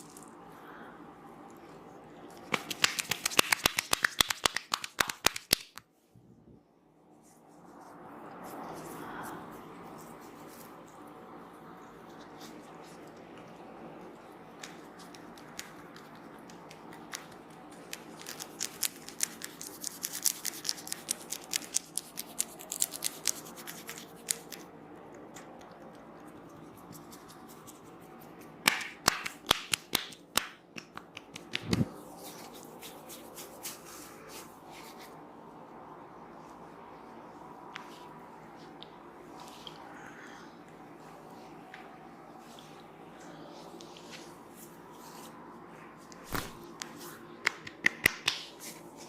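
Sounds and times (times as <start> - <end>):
hands clicking on hair: 2.3 - 5.9, 14.6 - 26.1, 26.8 - 33.9, 46.1 - 48.8.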